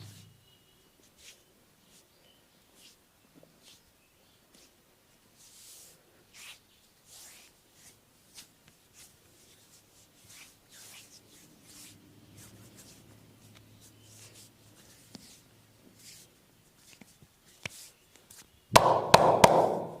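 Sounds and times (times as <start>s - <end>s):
hands rubbing on skin: 1.0s - 2.1s, 2.7s - 3.0s, 3.6s - 3.9s, 4.5s - 4.8s, 5.4s - 18.5s.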